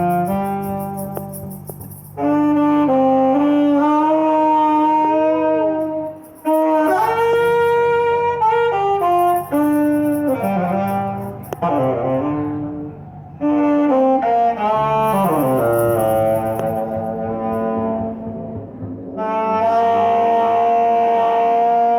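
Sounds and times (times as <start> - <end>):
brass band playing: 0.0 - 12.8, 13.7 - 18.3.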